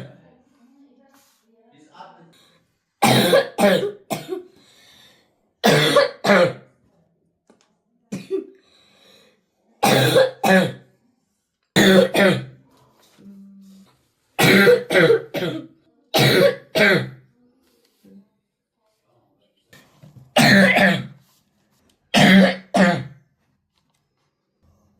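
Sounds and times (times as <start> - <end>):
boy coughing: 3.0 - 4.5, 5.6 - 6.6, 8.1 - 8.5, 9.8 - 10.8, 11.8 - 12.6, 14.4 - 17.2, 20.4 - 21.2, 22.2 - 23.2.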